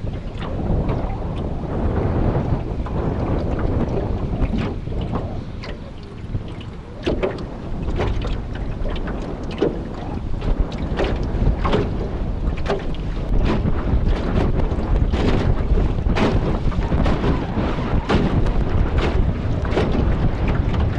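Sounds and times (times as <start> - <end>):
water splashing against boat: 0.0 - 20.9
wind rumble on microphone: 0.0 - 20.9.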